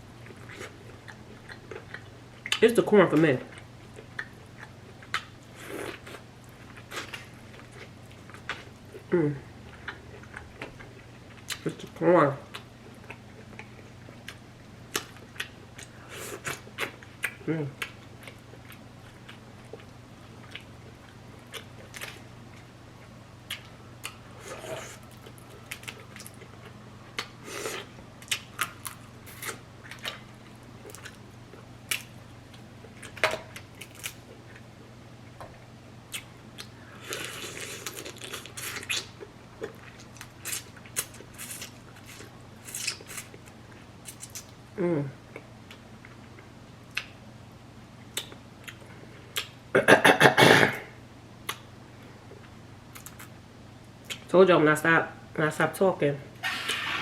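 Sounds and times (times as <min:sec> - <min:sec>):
faint steady hum: 0:00.0 - 0:57.0
close-miked chewing and mouth smacks: 0:00.2 - 0:02.7, 0:03.5 - 0:08.7, 0:12.5 - 0:24.2, 0:45.3 - 0:47.2, 0:48.1 - 0:49.6, 0:51.4 - 0:51.7, 0:52.4 - 0:53.3, 0:54.0 - 0:54.3
crunching and slurping: 0:36.1 - 0:44.6.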